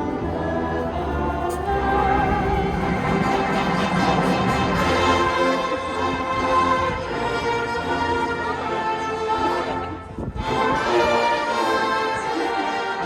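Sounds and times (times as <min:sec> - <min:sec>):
marching band playing: 0:01.5 - 0:08.3.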